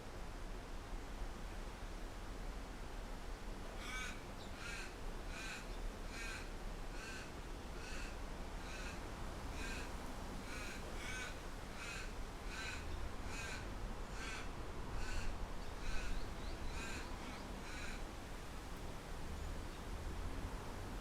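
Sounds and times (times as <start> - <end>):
low rumble of wind: 0.0 - 21.0
bird harsh calls: 10.5 - 18.0.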